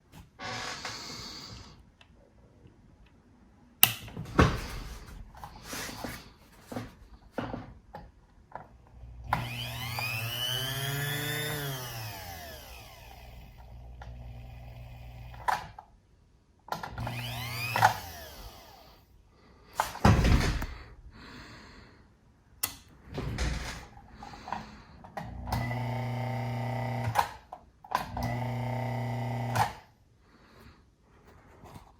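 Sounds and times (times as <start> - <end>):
electric dental drill motor: 8.6 - 15.8, 16.9 - 19.1, 25.2 - 27.3, 28.0 - 29.8.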